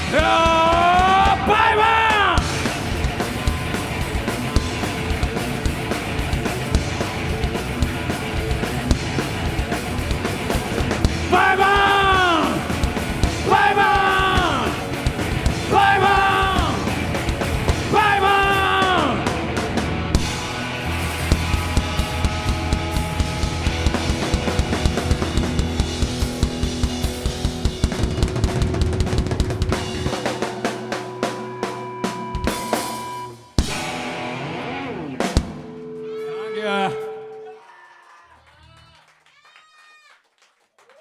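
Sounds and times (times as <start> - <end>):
rapid drum kit hits: 0.0 - 31.0
rock band playing live: 0.0 - 37.6
person shouting vocal: 11.3 - 12.7, 13.4 - 14.8, 15.7 - 16.9, 17.8 - 19.2.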